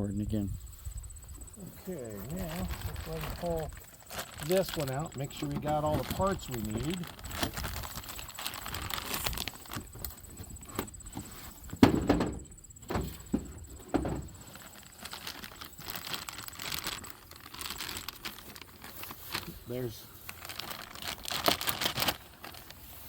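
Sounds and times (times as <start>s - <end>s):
rustling packaging: 1.8s - 23.0s
thump: 11.7s - 14.3s.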